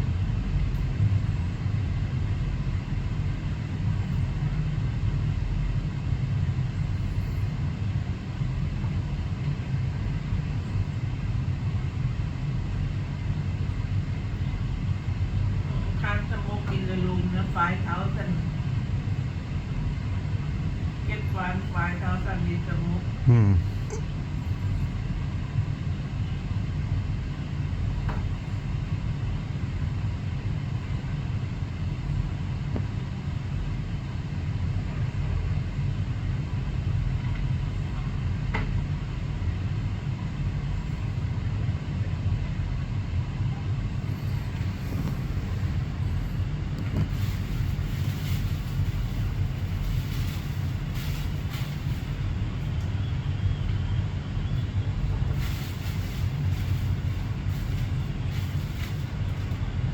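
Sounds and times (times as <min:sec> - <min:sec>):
vehicle engine rumbling: 0:43.9 - 0:59.9.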